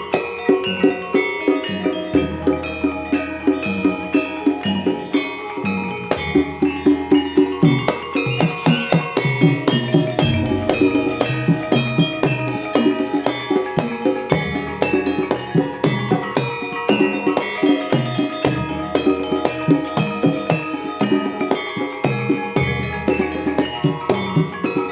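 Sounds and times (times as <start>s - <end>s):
drums: 0.0s - 24.9s
tuned metal percussion: 0.0s - 24.9s
deep gong-like notes: 6.1s - 16.2s.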